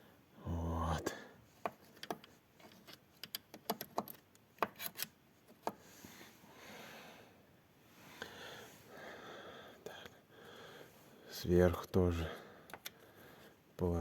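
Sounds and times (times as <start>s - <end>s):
soft hiss of breath: 5.8s - 11.4s.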